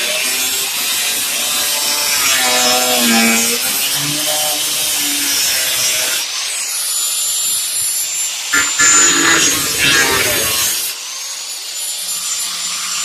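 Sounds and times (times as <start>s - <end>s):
power tool cutting sheet metal: 8.6s - 11.0s.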